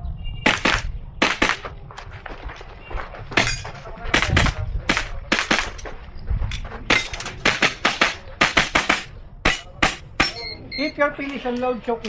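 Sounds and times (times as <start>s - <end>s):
airsoft pistol firing: 0.5s - 1.7s, 4.1s - 5.8s, 6.9s - 10.4s.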